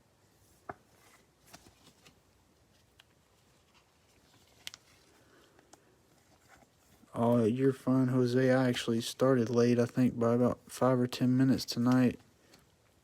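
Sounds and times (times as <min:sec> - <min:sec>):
faint clicks and rustles: 0:00.4 - 0:07.5.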